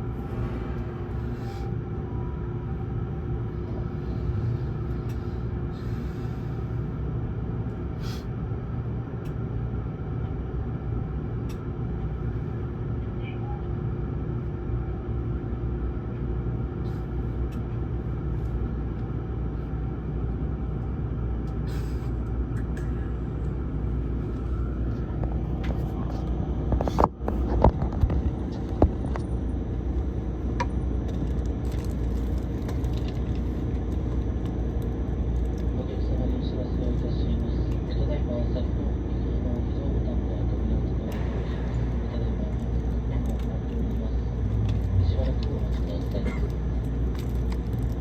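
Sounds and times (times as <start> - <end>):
train car rumble: 0.0 - 48.0.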